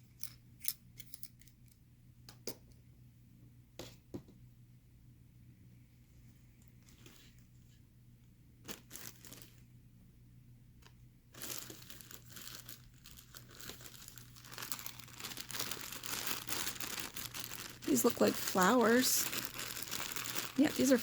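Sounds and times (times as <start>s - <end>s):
bag crinkling and rustling: 8.6s - 9.6s, 11.3s - 21.0s.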